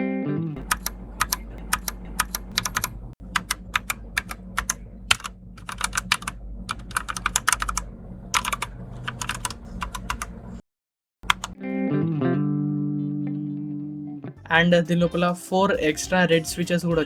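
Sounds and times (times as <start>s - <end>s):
mechanical keyboard key clacks: 0.6s - 7.8s, 8.4s - 10.4s, 11.2s - 11.6s.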